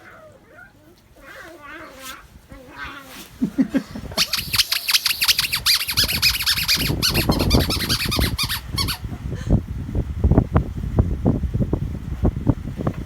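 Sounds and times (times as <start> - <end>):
squeaky dog toy squeaking: 4.2 - 9.1.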